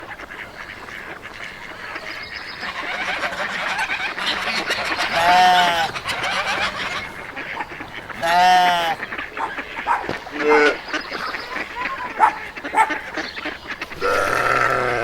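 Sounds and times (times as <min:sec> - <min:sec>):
flock of farm birds calling: 0:00.0 - 0:15.0
loud honking call: 0:04.3 - 0:10.9.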